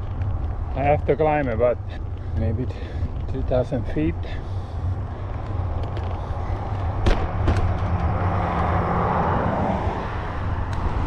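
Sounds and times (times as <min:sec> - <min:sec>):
wind rumble on microphone: 0:00.0 - 0:11.0
vehicle passing: 0:04.2 - 0:11.0.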